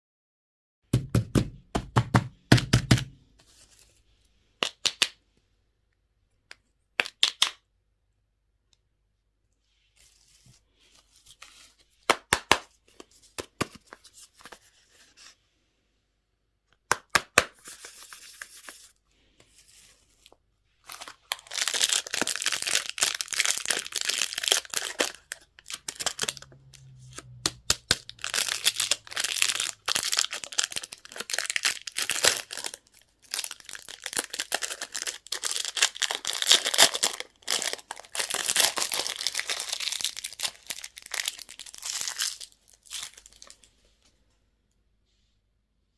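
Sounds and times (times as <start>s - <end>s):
wrappers crinkling and tearing: 20.8s - 43.7s.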